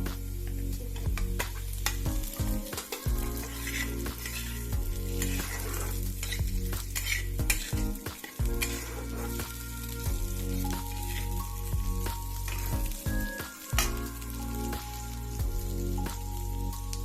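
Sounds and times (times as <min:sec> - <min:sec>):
chicken sizzling in hot oil: 0:00.0 - 0:17.0
utensil scraping a pan: 0:02.7 - 0:12.8.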